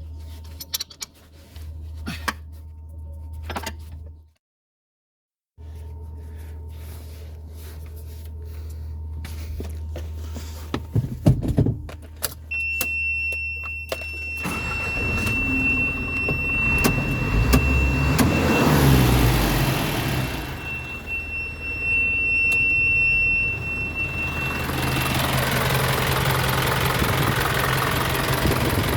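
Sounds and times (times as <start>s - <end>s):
steady high-pitched beep: 12.6s - 25.4s
truck engine running: 14.3s - 28.9s.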